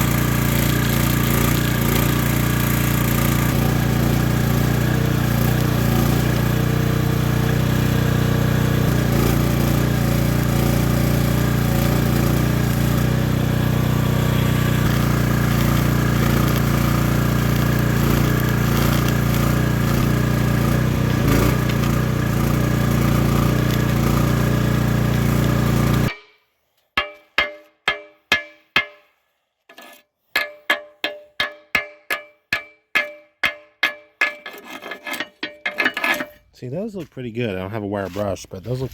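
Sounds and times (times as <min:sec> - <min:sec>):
welding drone with hiss: 0:00.0 - 0:26.1
hammer striking metal: 0:26.1 - 0:29.2, 0:30.3 - 0:36.3.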